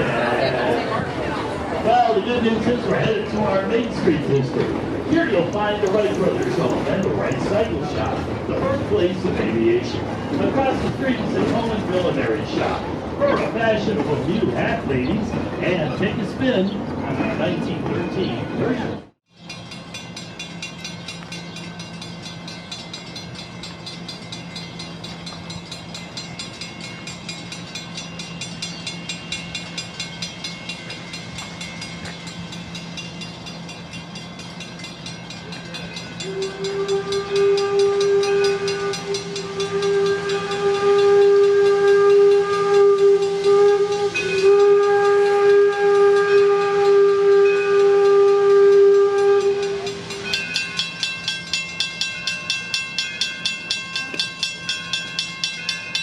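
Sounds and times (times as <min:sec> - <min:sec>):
steam locomotive pulsing beat: 0:01.8 - 0:16.4, 0:19.3 - 0:56.0
steam whistle long blast: 0:36.2 - 0:50.6.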